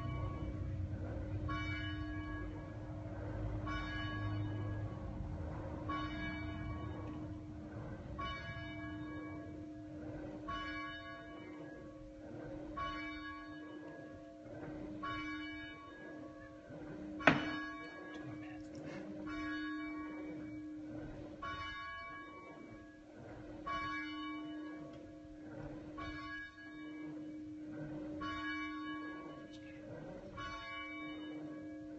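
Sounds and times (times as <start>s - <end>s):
church bell tolling: 0.0s - 23.0s, 23.7s - 29.7s, 30.3s - 31.9s
sharp knock: 17.2s - 17.6s.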